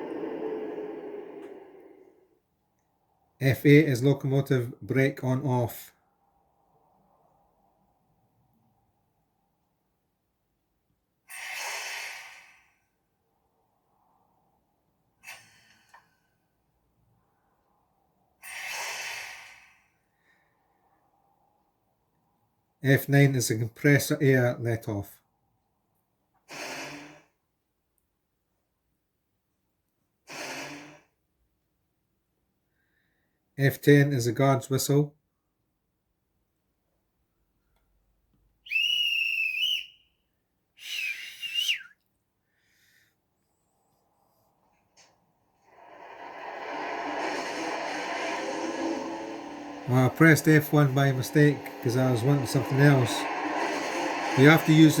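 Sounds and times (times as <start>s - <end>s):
air brake hiss: 0.0s - 2.1s
guard's whistle blasts: 38.7s - 40.1s, 40.8s - 41.9s.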